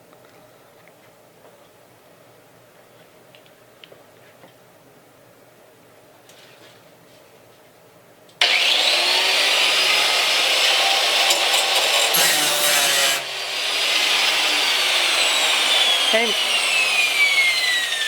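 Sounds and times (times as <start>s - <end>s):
angle grinder grinding steel: 8.4s - 18.0s.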